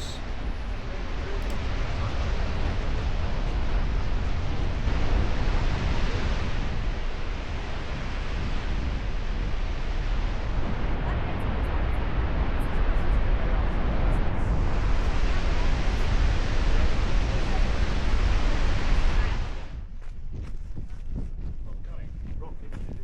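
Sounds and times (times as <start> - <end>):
wind rumbling on microphone: 0.0 - 23.0.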